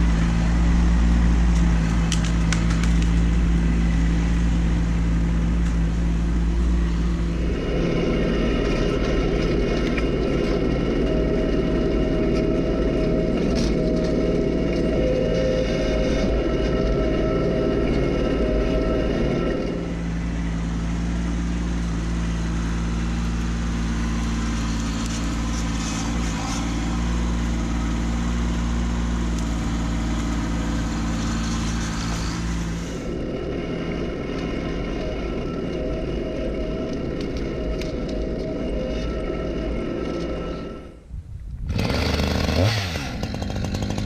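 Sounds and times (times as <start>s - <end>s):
tractor diesel engine running: 0.0s - 44.0s.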